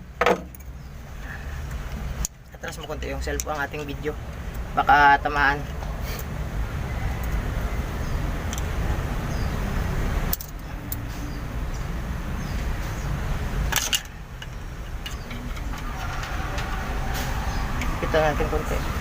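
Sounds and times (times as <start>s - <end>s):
metallic clicks of hand tools: 10.3s - 11.1s.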